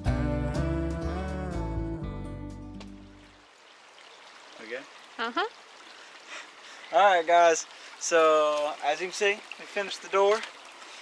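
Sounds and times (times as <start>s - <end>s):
acoustic guitar song: 0.0s - 3.3s.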